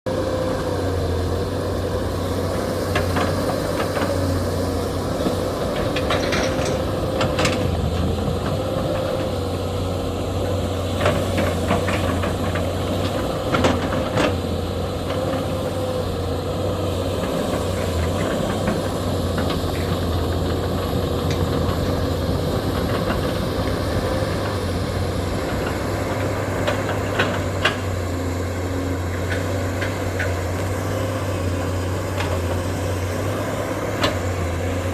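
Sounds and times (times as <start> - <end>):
excavator diesel engine running: 0.1 - 34.9
machine knocks and clanks: 5.2 - 9.6.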